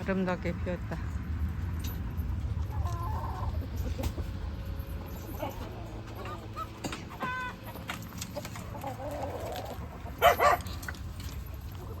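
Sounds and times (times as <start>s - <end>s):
chickens clucking: 2.5s - 12.0s.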